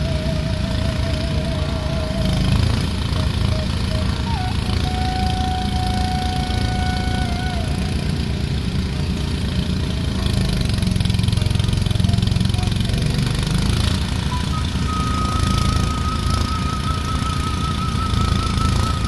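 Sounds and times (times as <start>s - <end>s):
small engine running: 0.0s - 19.0s.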